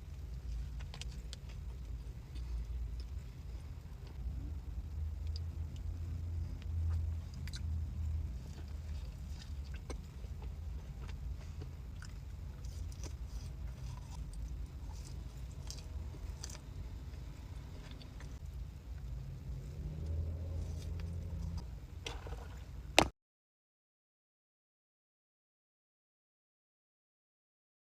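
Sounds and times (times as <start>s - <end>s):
low rumble: 0.0s - 22.9s
person chewing food: 5.2s - 18.4s.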